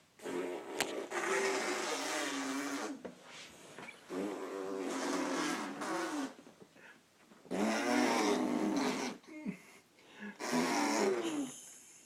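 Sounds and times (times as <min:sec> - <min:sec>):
person blowing raspberries: 0:00.2 - 0:03.0, 0:04.1 - 0:06.4, 0:07.5 - 0:09.6, 0:10.3 - 0:11.7.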